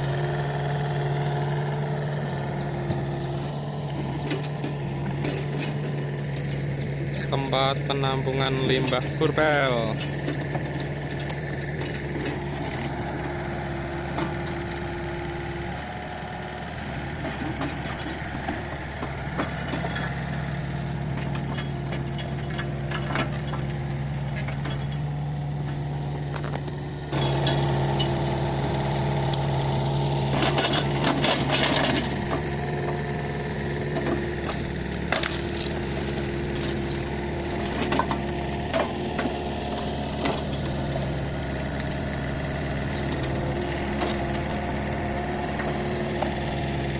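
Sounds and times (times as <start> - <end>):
excavator diesel engine running: 0.0 - 46.9
rattling and scraping: 2.8 - 14.8, 16.8 - 46.9
metallic clinks and knocks: 19.3 - 28.2.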